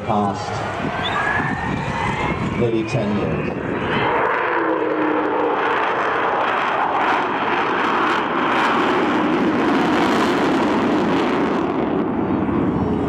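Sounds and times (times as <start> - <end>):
jet engines roaring: 0.0 - 13.0.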